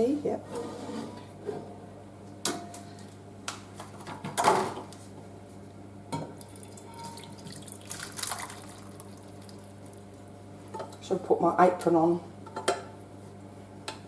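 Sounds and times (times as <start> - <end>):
food sloshing and plopping: 6.4 - 10.0.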